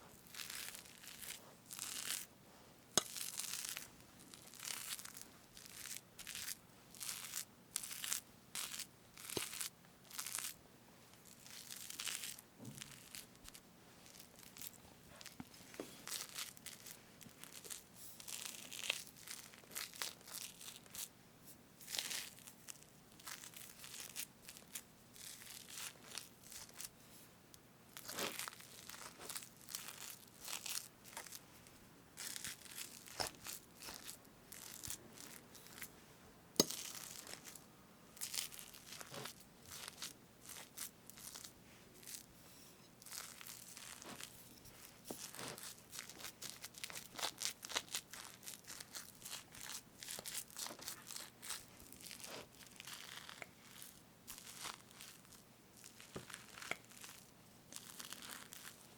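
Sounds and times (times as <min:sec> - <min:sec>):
whipped cream crackling: 0:00.0 - 0:02.3, 0:02.9 - 0:21.2, 0:21.8 - 0:27.0, 0:27.9 - 0:36.0, 0:36.6 - 0:58.9.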